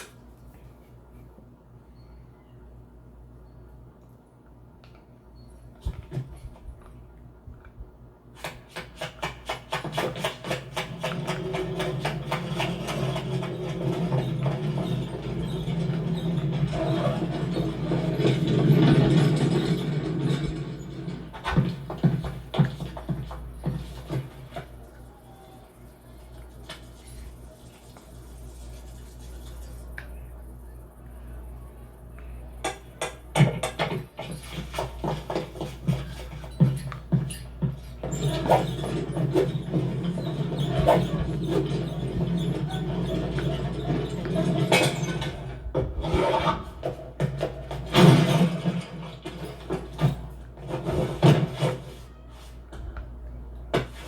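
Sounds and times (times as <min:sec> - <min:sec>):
loud knocks and clattering hits: 0:08.8 - 0:24.4, 0:33.0 - 0:51.8
machine hum: 0:10.9 - 0:51.4.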